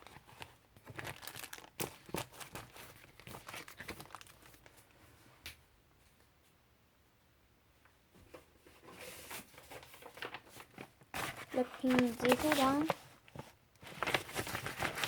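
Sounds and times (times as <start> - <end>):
packaging crinkling: 0.0 - 4.8, 9.6 - 15.0.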